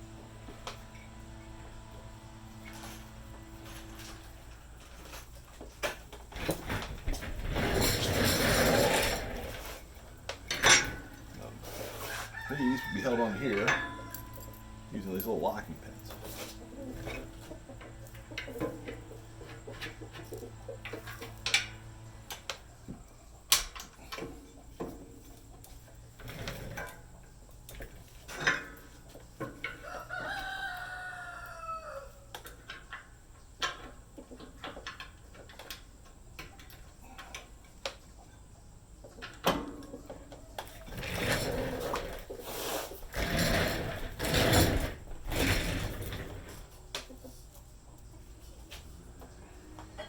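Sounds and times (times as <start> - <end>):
rooster crowing: 12.0 - 14.3, 29.7 - 32.3.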